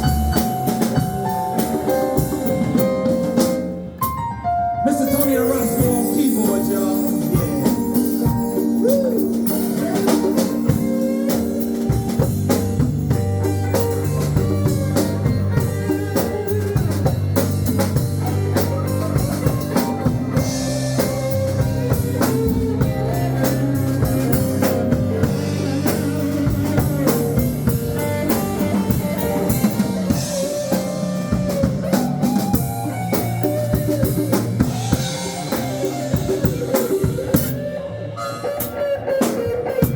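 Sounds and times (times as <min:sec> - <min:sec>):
blues music: 0:00.0 - 0:39.9
drum kit beat: 0:00.0 - 0:39.9
sustained guitar notes: 0:00.0 - 0:39.9.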